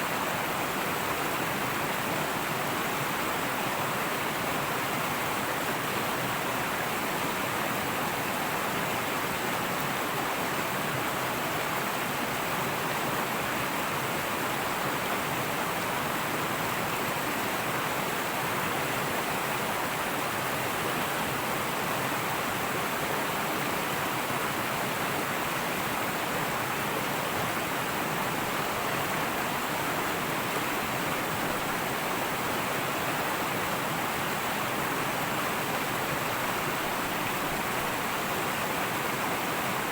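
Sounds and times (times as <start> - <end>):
river water rushing over rocks: 0.0 - 39.9.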